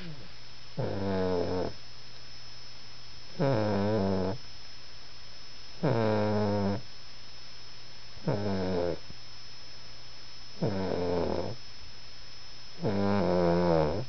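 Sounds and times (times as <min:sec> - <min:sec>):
rasping snores: 0:00.8 - 0:01.8, 0:03.4 - 0:04.4, 0:05.8 - 0:06.8, 0:08.2 - 0:09.0, 0:10.6 - 0:11.6, 0:12.8 - 0:14.0.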